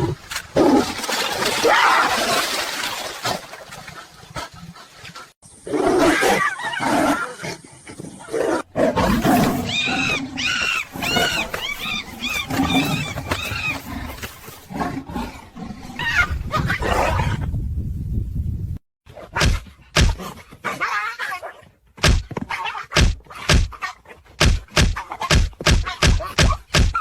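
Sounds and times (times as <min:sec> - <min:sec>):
wild animals roaring and snarling: 0:05.6 - 0:17.5
high arching animal cries: 0:09.2 - 0:14.1.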